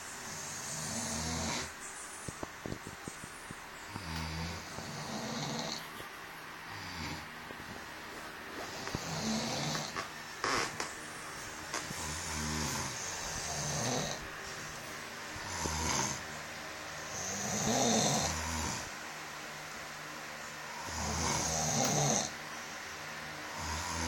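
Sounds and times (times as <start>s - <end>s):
rasping snores: 0.3s - 1.7s, 3.9s - 6.0s, 6.7s - 7.3s, 8.6s - 10.8s, 11.8s - 14.2s, 15.4s - 16.3s, 17.0s - 18.9s, 20.7s - 22.4s, 23.5s - 24.0s
sharp snorts: 0.3s - 1.7s, 11.8s - 14.2s, 15.4s - 16.2s, 20.8s - 22.3s.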